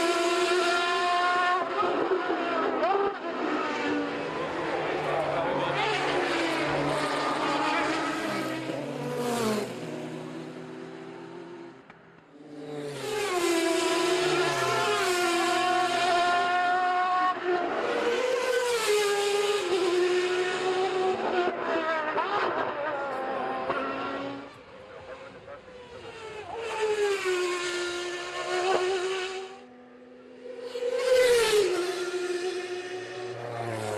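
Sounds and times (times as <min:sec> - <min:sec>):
race car engines passing: 0:00.0 - 0:33.9.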